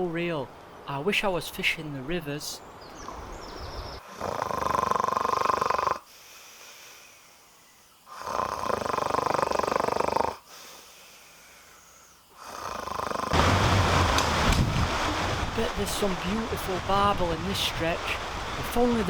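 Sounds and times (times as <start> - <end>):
person snoring: 4.2 - 6.0, 8.1 - 10.4, 12.4 - 13.4
quiet breathing: 4.2 - 12.8.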